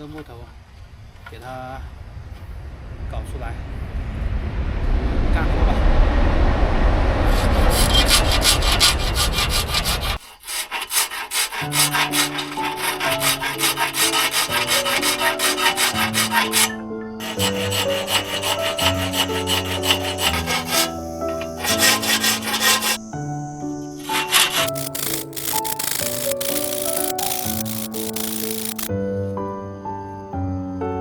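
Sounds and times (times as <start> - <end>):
rip saw rasping through log: 7.3 - 23.1, 24.0 - 28.9.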